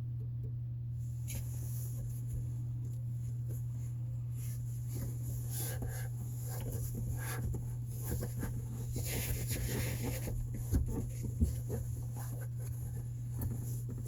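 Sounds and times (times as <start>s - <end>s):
steady low hum: 0.0s - 14.0s
rustling and scraping of handling: 1.0s - 14.0s.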